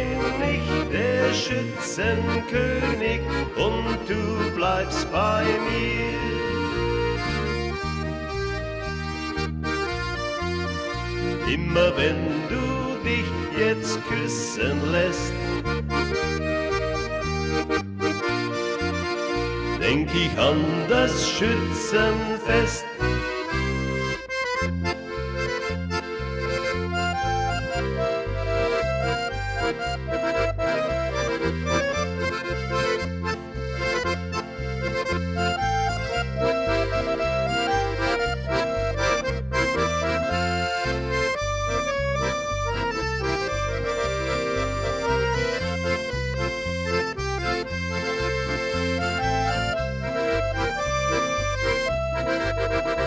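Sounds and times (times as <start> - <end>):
accordion melody: 0.0 - 53.0
alternating bass beat: 5.4 - 13.7, 15.0 - 53.0.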